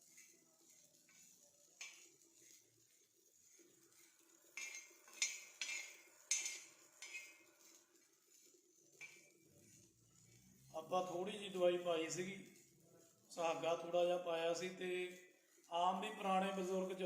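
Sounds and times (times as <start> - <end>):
metal utensil clinking on griddle: 0.0 - 11.5.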